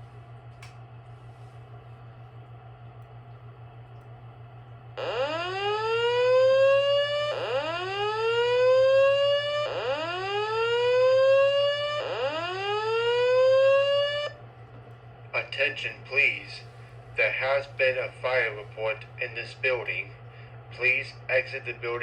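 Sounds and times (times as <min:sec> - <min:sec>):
steady low hum: 0:00.0 - 0:22.0
fire alarm whoop tone: 0:05.0 - 0:14.4.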